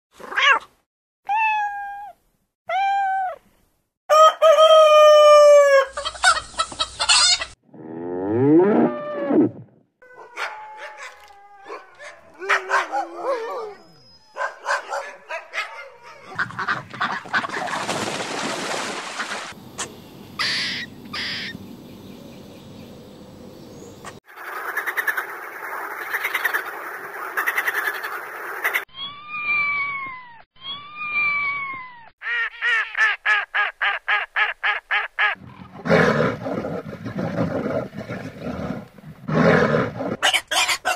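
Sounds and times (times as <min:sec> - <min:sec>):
cat meowing: 0:01.3 - 0:03.4
rooster crowing: 0:04.1 - 0:06.0
hens clucking: 0:05.9 - 0:07.6, 0:16.3 - 0:17.7
barnyard animal calls: 0:34.9 - 0:40.9.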